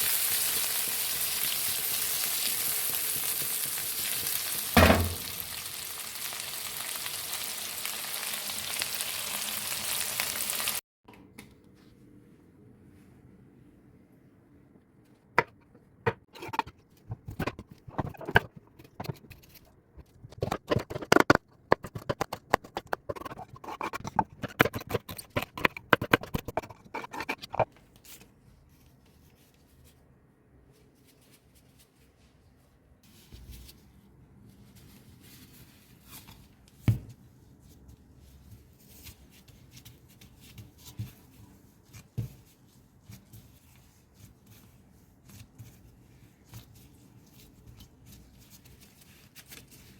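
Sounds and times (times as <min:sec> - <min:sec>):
knock: 0:04.8 - 0:05.4
food preparation scraping and clicking: 0:15.4 - 0:28.3.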